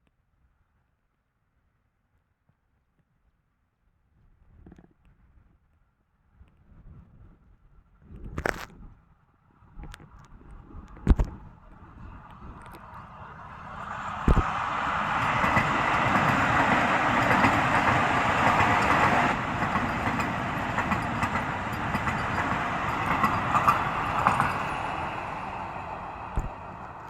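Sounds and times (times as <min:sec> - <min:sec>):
train wheels rumbling on rails: 0:11.1 - 0:27.0.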